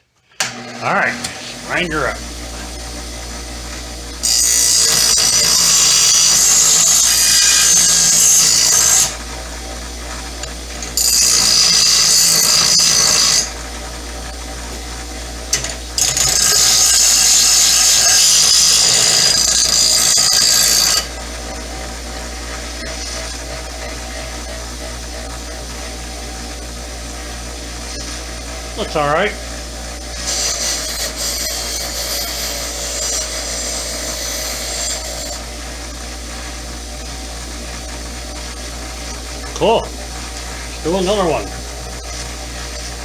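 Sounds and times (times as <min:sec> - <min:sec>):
grinder motor running: 0:00.5 - 0:43.0
grinder grinding steel screw: 0:03.7 - 0:09.4, 0:10.1 - 0:13.7, 0:15.5 - 0:21.7, 0:30.1 - 0:35.5.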